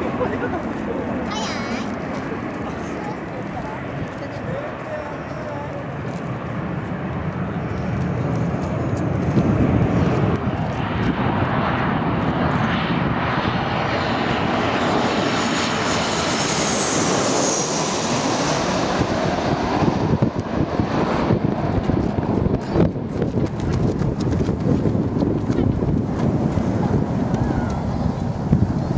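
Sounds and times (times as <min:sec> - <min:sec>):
jet airliner passing overhead: 0:00.0 - 0:28.9.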